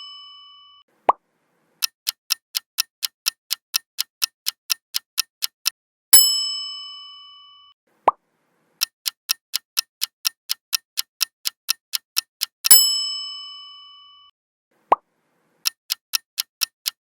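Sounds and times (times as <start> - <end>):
bell ding: 0.0 - 0.8
clock ticking: 1.8 - 5.8, 8.8 - 12.9, 15.6 - 17.0.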